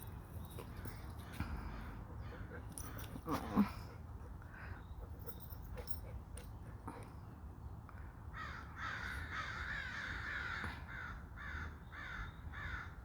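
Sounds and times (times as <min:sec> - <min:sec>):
crows cawing: 0:08.3 - 0:13.0.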